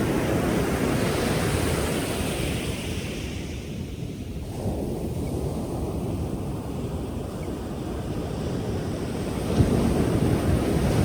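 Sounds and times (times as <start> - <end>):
ocean waves breaking: 0.0 - 11.0.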